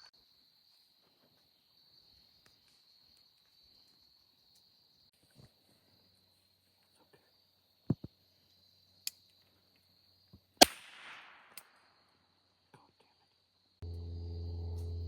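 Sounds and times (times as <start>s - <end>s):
crickets chirping: 0.0s - 10.6s, 11.6s - 15.0s
loud musket shot: 10.6s - 11.6s.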